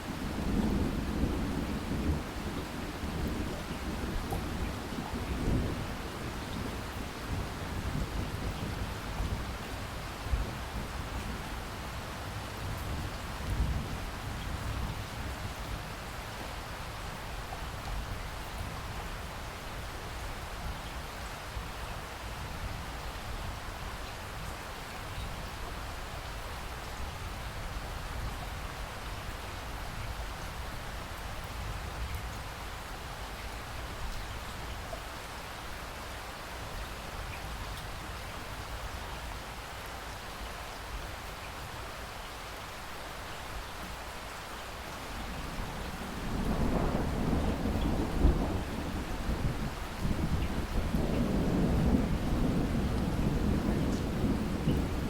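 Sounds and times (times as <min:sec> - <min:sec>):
steady rain falling: 0:00.0 - 0:55.0
thunder rolling: 0:45.3 - 0:55.0.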